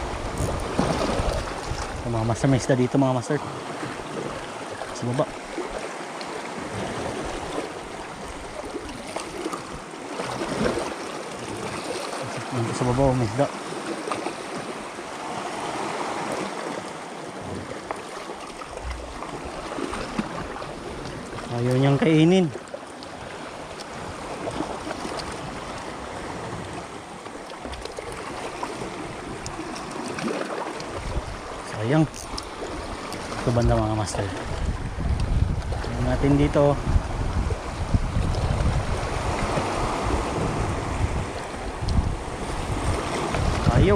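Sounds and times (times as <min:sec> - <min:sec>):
seawater lapping on shore: 0:00.0 - 0:43.9.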